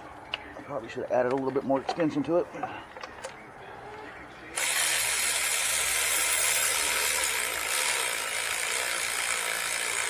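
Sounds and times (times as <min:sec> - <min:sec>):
air ratchet hissing: 0:04.6 - 0:10.0.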